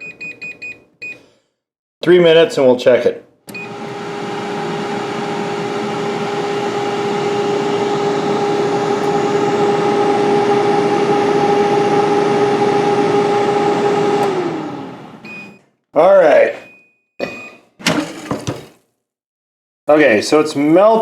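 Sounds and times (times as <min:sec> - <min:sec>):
air fryer fan humming: 0:17.9 - 0:18.7.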